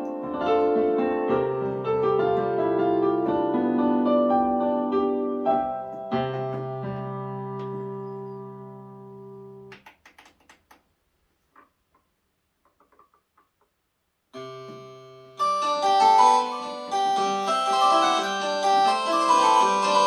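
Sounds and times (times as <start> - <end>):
synthesizer chords and notes: 14.4 - 20.0.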